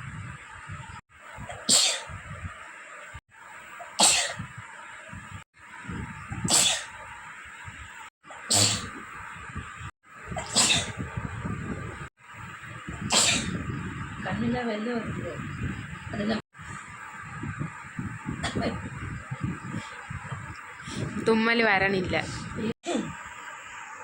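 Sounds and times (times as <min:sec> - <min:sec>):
woman sneezing: 0:10.5 - 0:10.9.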